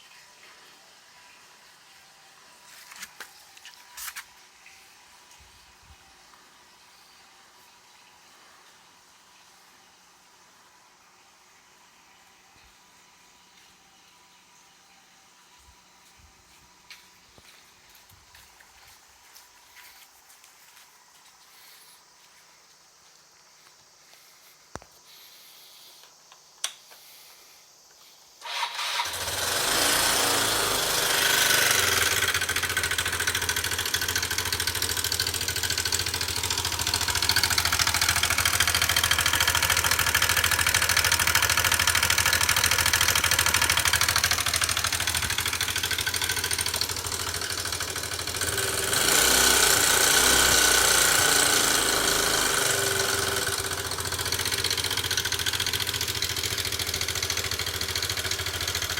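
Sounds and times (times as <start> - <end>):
scooter engine running: 28.4 - 58.9.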